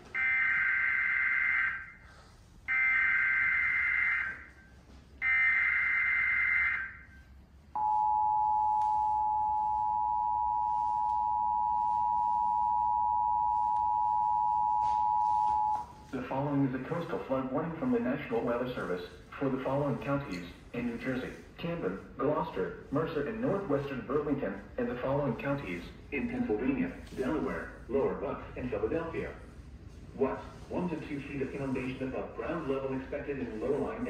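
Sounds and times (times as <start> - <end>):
steady two-tone attention signal: 7.8 - 16.0.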